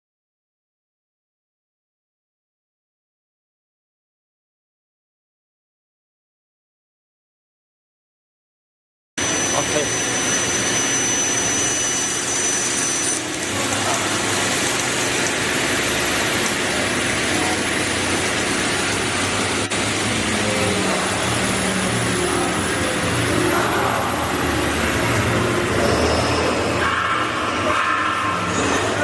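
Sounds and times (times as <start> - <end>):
panel saw whirring: 9.2 - 29.0.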